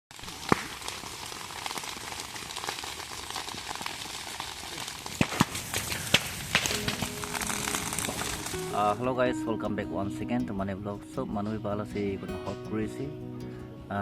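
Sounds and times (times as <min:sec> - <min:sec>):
fire popping: 0:00.1 - 0:09.0
vegetation fire crackling: 0:00.1 - 0:09.3.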